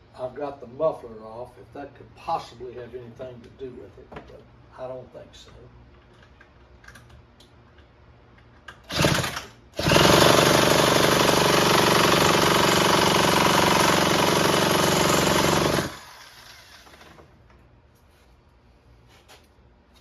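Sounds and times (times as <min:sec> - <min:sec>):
trimmer engine cranking without firing: 0:08.9 - 0:16.8.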